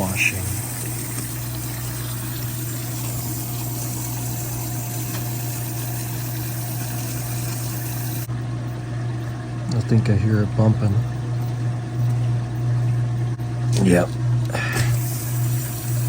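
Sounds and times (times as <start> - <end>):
water running into tub: 0.0 - 8.3, 9.2 - 16.0
dishwasher low hum: 0.0 - 16.0.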